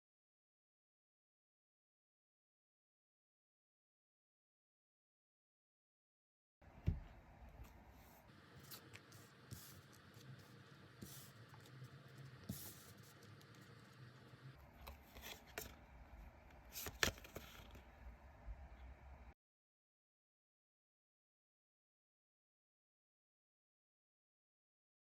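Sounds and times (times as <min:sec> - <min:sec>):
cards rustling and sliding: 0:14.8 - 0:15.8, 0:16.5 - 0:17.9.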